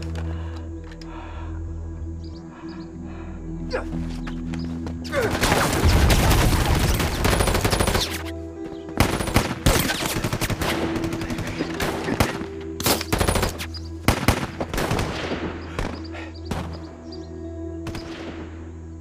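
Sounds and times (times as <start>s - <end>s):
background music with drone: 0.0s - 19.0s
gunshots and bursts: 5.2s - 16.9s, 17.8s - 18.7s.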